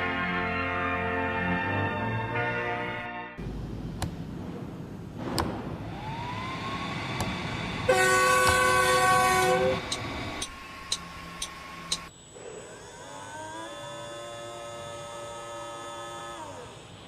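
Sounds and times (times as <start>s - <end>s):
chorded air horn: 0.0s - 3.4s, 7.8s - 10.0s
rising whine: 5.8s - 12.1s
sharp clicks: 9.9s - 12.1s.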